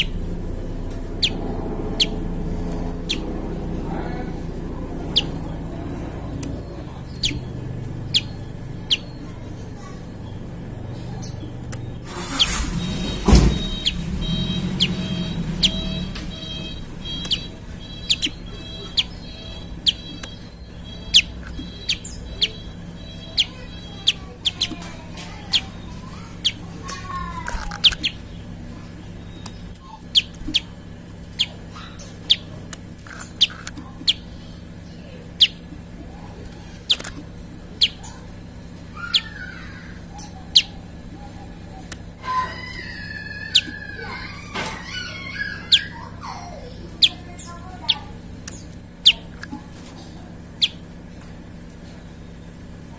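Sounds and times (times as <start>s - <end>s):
sliding bird calls: 0.0s - 52.8s
steady low hum: 0.0s - 52.9s
bird sharp high chips: 11.1s - 34.7s, 36.6s - 49.6s.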